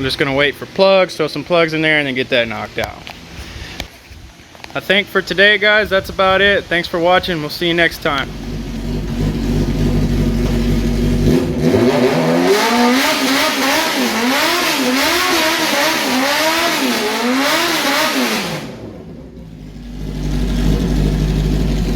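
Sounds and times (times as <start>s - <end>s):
motorcycle engine revving: 7.8s - 21.9s.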